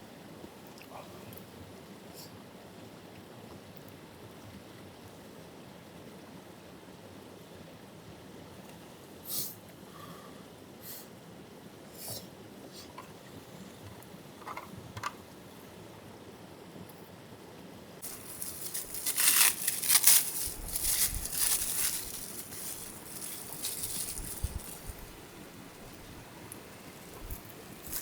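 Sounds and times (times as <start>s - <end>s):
crinkling and crunching: 18.0s - 28.0s.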